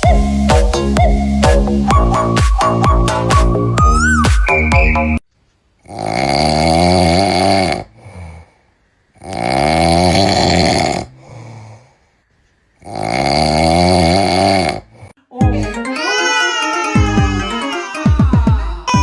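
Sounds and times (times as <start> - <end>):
man snoring loudly: 5.8 - 8.5, 9.2 - 11.8, 12.8 - 15.1
soft breathing: 7.8 - 9.0, 11.1 - 12.9.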